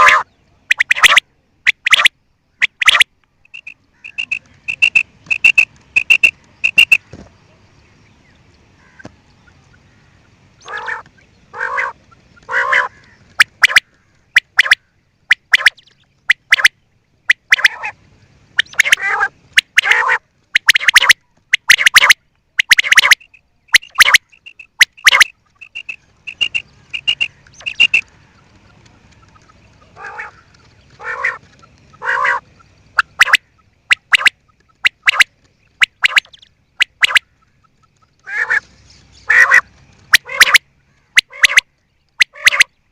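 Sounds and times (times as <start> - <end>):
quail calling: 0.0 - 7.2, 8.8 - 42.8.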